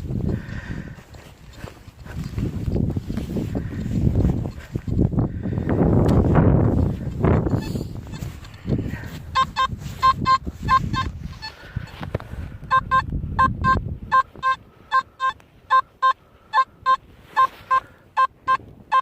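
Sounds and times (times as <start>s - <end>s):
metal detector beeping: 3.1s - 5.2s, 6.6s - 12.0s, 12.6s - 19.0s.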